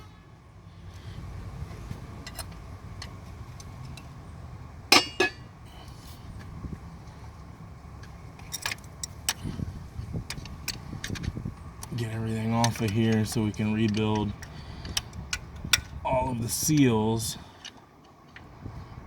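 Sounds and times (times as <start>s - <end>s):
metal tools clinking: 4.9s - 5.5s, 8.4s - 9.4s, 12.4s - 16.0s.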